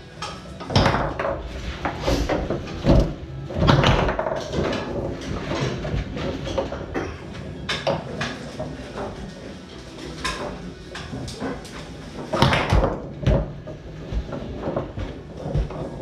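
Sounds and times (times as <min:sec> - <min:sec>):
foosball rods slamming: 0:00.2 - 0:09.3, 0:10.2 - 0:16.0
foosball ball knocks: 0:00.6 - 0:07.0, 0:12.3 - 0:16.0.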